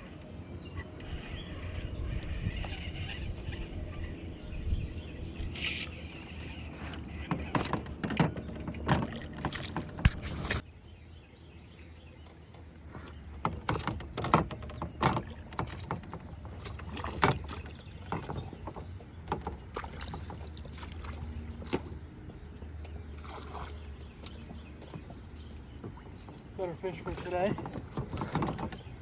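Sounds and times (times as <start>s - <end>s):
water splashing and sloshing: 5.4s - 11.2s, 11.8s - 29.0s
small knocks and clicks: 12.2s - 23.0s.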